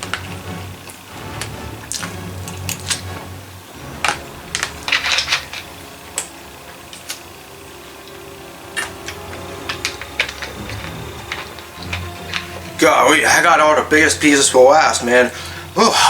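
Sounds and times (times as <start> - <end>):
eating clicks and crackles: 0.0 - 12.9.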